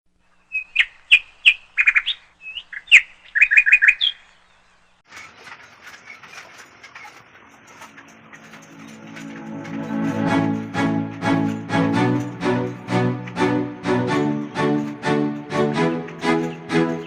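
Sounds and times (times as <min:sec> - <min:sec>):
small bird chirping: 0:00.2 - 0:07.9
music: 0:08.4 - 0:17.0.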